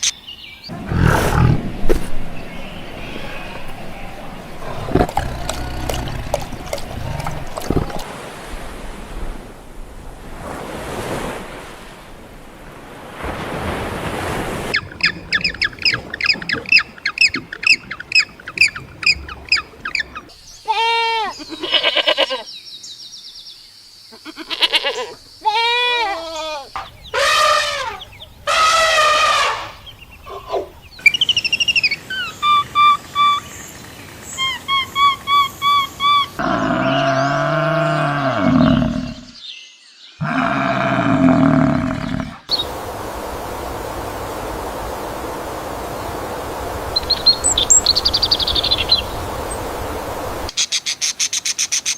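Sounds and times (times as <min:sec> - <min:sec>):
even noise: 0:00.7 - 0:08.7
loud pitched animal calls: 0:24.2 - 0:31.2
rapid bird chirping: 0:29.4 - 0:36.4, 0:46.8 - 0:51.9.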